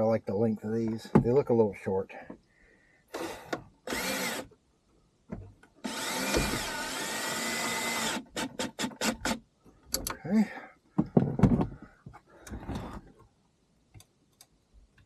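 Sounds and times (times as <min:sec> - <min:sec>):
drill clicks: 0:03.1 - 0:04.5, 0:05.8 - 0:10.2
power drill motor whine: 0:03.1 - 0:04.5, 0:05.8 - 0:09.4.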